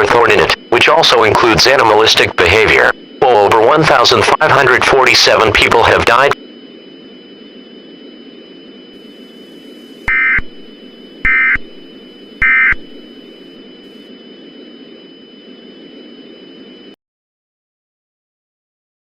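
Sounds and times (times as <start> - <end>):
harsh warbling electronic data bursts: 0.0 - 6.4, 8.9 - 14.2
thin high whine: 0.0 - 17.0.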